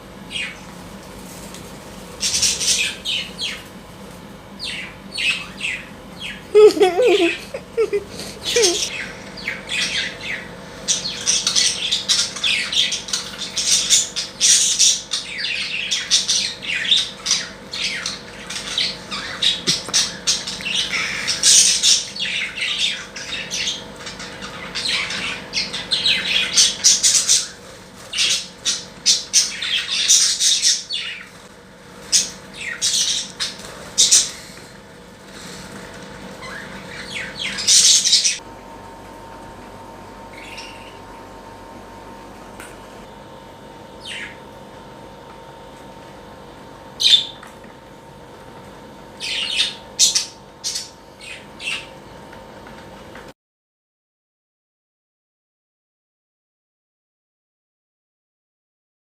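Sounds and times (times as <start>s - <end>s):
pet birds squawking and chirping: 0.3s - 0.6s, 2.2s - 3.7s, 4.5s - 38.4s, 40.3s - 41.1s, 43.9s - 44.5s, 46.9s - 47.5s, 49.2s - 52.0s.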